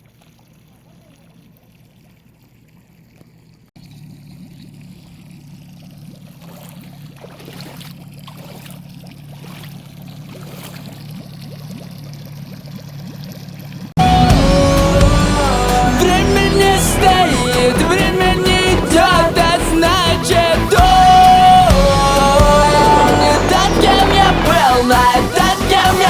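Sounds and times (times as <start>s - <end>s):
water splashing around hull: 0.0s - 26.0s
outboard motor running: 3.8s - 26.0s
loud music: 14.0s - 26.0s.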